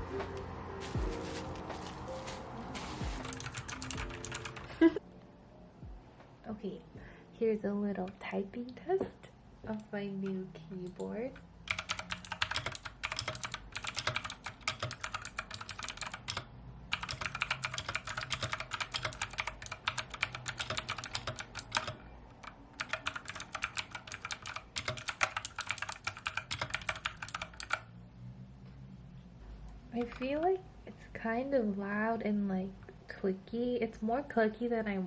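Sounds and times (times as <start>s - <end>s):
clicky mechanical keyboard typing: 2.8s - 4.9s, 9.8s - 27.8s, 30.0s - 30.5s.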